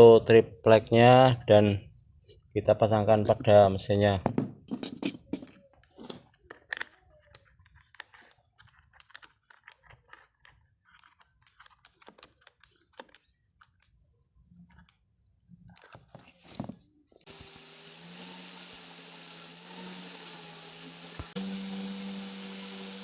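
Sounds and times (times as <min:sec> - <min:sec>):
power-tool motor humming: 0:17.3 - 0:23.0.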